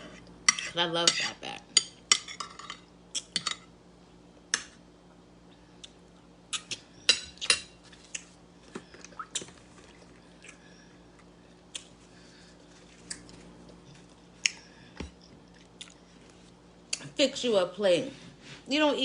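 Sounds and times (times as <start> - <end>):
mouth chewing and smacking: 13.0 - 16.2.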